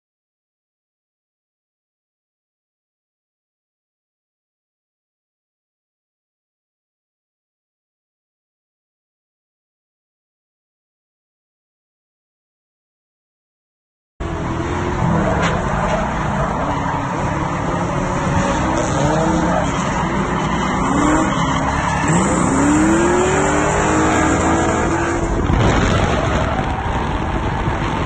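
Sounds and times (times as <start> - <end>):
tyres squealing: 15.0 - 23.2
car engine revving hard: 17.0 - 28.0.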